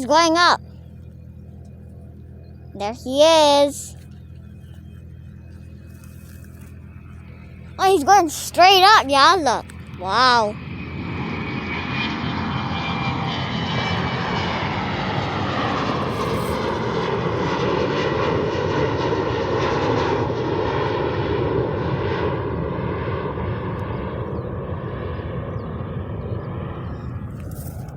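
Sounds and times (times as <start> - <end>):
jet engine whine: 0.0 - 27.9
jet engines roaring: 6.7 - 27.9.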